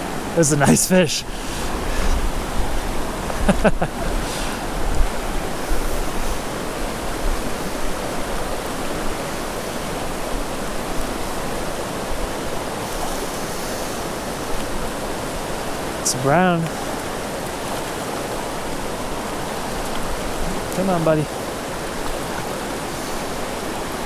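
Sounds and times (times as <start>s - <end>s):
creek rushing over rocks: 0.0s - 24.0s.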